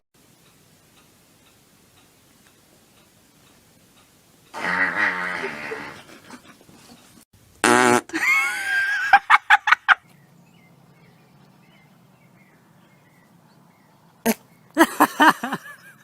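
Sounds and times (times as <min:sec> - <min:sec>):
fart: 0:04.6 - 0:06.1, 0:07.6 - 0:08.1.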